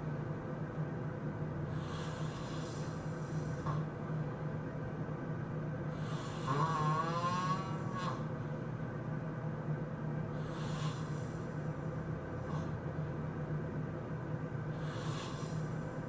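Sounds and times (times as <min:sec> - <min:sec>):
steady low hum: 0:00.0 - 0:16.0
person snoring: 0:06.0 - 0:08.2, 0:10.4 - 0:11.4, 0:14.8 - 0:15.7.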